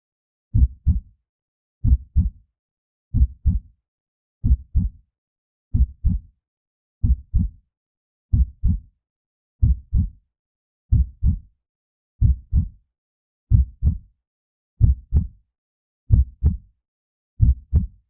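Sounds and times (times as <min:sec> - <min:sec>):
heartbeat thumps: 0:03.2 - 0:03.6, 0:04.4 - 0:04.9, 0:08.3 - 0:08.8, 0:09.6 - 0:10.1, 0:10.9 - 0:11.4, 0:12.2 - 0:12.7, 0:13.5 - 0:14.0, 0:14.8 - 0:15.3, 0:16.1 - 0:16.6, 0:17.4 - 0:17.9.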